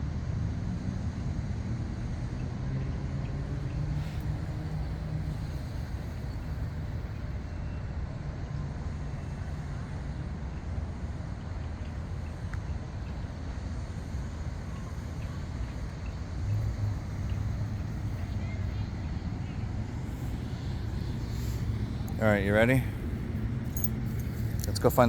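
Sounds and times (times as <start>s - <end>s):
city traffic rumble: 0.0s - 25.0s
vehicle engine: 0.0s - 25.0s.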